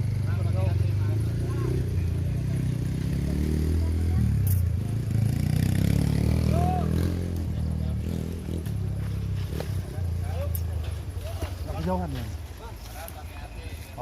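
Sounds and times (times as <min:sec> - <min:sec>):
off-road vehicle engine revving: 0:00.0 - 0:11.1.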